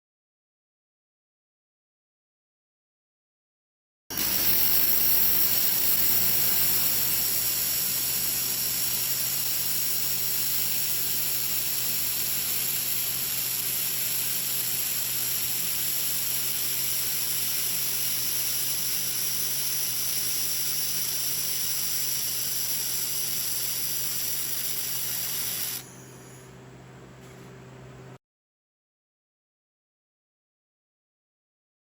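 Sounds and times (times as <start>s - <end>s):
laser welder hissing: 4.1s - 26.6s.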